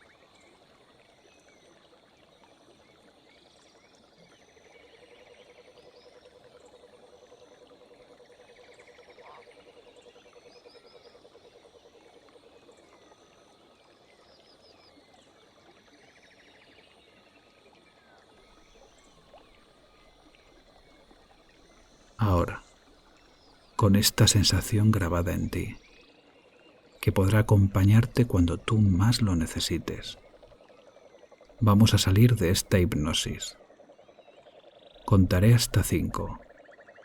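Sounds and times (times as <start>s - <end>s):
stream water running: 18.6s - 26.3s, 27.0s - 34.1s
birds chirping: 22.2s - 22.7s, 23.8s - 25.8s, 27.0s - 30.2s, 31.6s - 33.5s, 35.1s - 36.4s.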